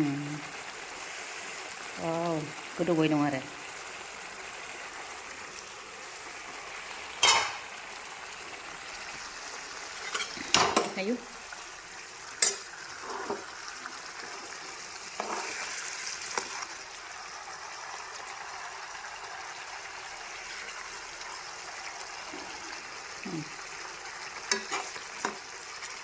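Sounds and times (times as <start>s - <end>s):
meat sizzling in a pan: 0.0s - 26.0s
utensil scraping a pan: 9.9s - 10.8s, 12.4s - 16.8s, 24.4s - 25.4s.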